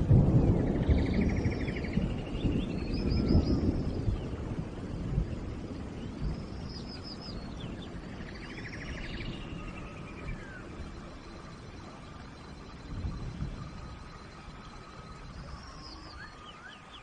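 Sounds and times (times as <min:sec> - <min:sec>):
steady rain: 0:00.0 - 0:17.0
birds whistling and trilling: 0:00.7 - 0:04.4, 0:05.4 - 0:17.0.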